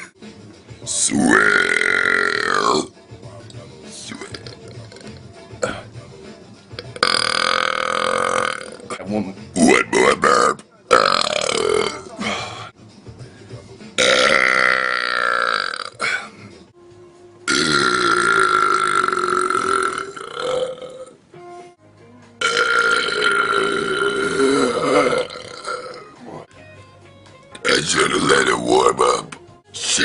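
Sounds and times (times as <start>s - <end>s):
man belching: 1.0s - 2.9s, 4.0s - 5.9s, 6.8s - 9.0s, 9.6s - 12.7s, 14.0s - 16.4s, 17.5s - 21.2s, 22.4s - 26.4s, 27.6s - 29.4s.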